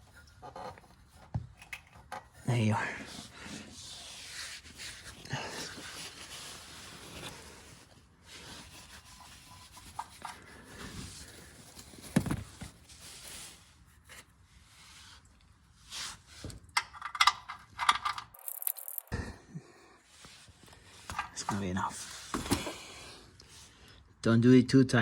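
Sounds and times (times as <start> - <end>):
oil filter rubbing and scraping: 0.0 - 12.0.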